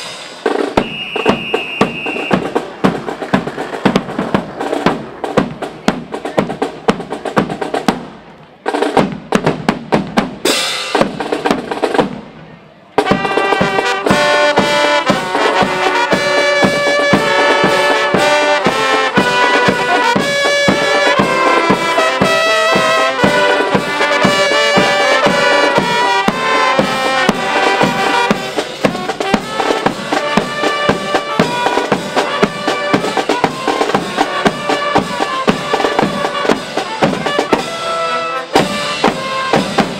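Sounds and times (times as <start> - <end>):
marching band drums: 0.0 - 39.9
brass playing a tune: 13.0 - 39.9.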